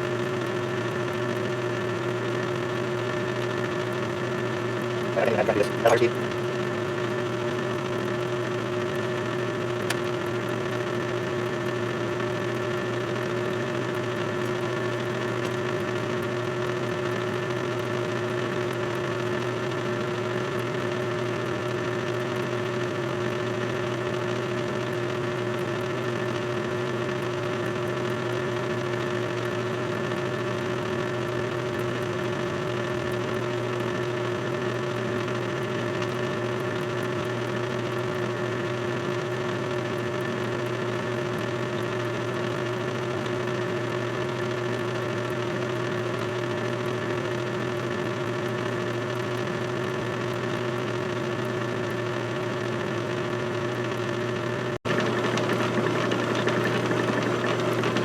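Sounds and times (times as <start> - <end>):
faint click: 9.8 - 10.1
electric drill whine: 54.9 - 58.0.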